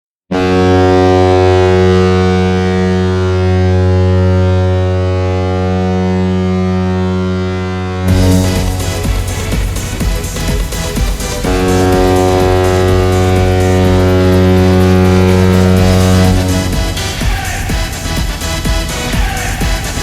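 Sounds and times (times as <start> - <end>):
goal horn blast: 0.3 - 19.0
electronic dance music: 6.2 - 20.0.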